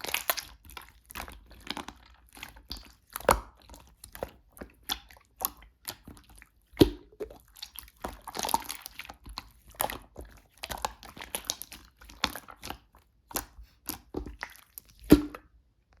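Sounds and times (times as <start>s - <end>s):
slime squished by hand: 0.0s - 15.6s.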